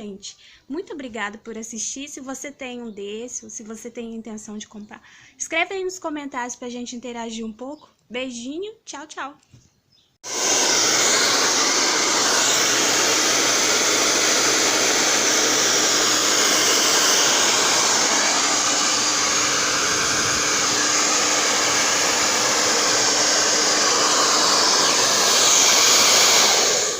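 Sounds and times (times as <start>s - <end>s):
hair dryer blowing air: 10.2s - 26.9s.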